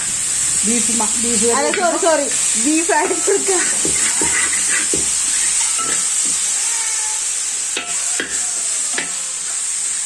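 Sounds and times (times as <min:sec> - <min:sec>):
meat sizzling in oil: 0:00.0 - 0:10.0.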